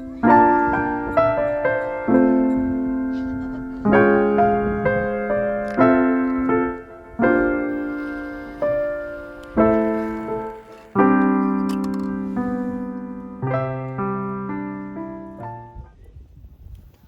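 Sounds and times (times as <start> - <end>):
slow piano chords: 0.0 - 15.9.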